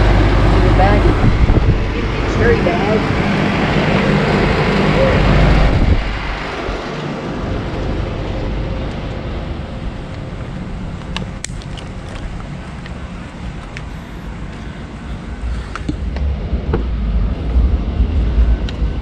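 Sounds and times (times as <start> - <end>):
air conditioner fan rush: 0.0 - 19.0
low compressor hum: 0.0 - 19.0.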